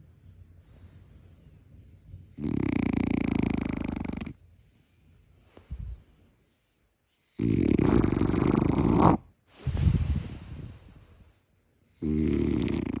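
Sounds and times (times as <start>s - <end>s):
dog snoring: 2.3s - 4.4s, 7.2s - 10.8s, 11.9s - 13.0s.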